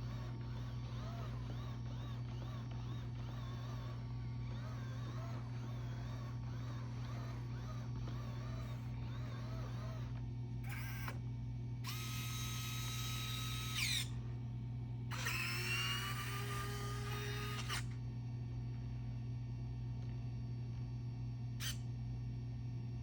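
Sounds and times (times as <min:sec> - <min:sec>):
robot vacuum motors whining: 0:00.0 - 0:11.2, 0:11.8 - 0:14.2, 0:15.1 - 0:18.0
steady low hum: 0:00.0 - 0:23.0.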